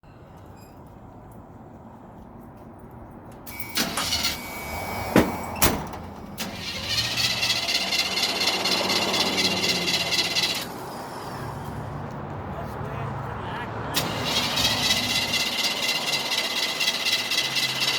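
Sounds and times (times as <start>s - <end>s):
starter cranking truck engine: 3.4s - 11.9s, 13.9s - 17.9s.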